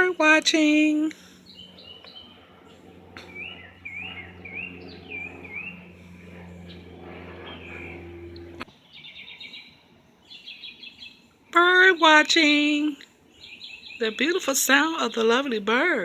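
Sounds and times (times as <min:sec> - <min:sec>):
steady low hum: 0:00.0 - 0:08.7.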